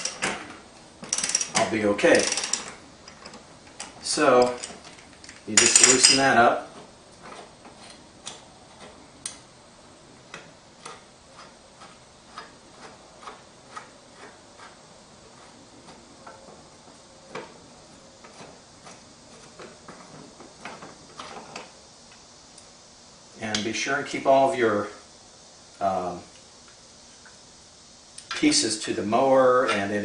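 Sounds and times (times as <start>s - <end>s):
wrench clicking on bolt: 1.1s - 4.7s.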